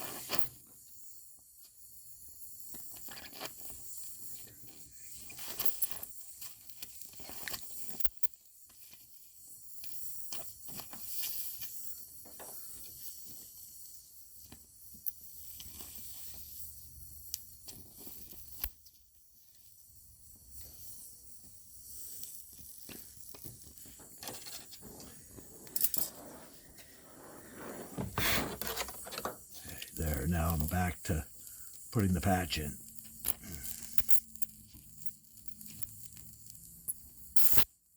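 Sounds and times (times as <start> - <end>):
welding torch flame hissing: 24.7 - 32.7.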